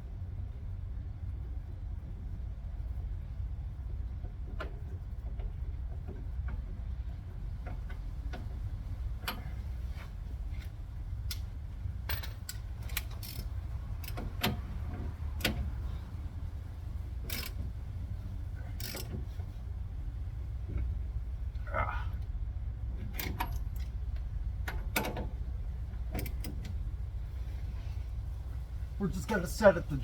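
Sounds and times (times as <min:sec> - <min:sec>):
steady low hum: 0:00.0 - 0:30.0
metallic clicks of hand tools: 0:17.2 - 0:17.6, 0:18.7 - 0:19.2.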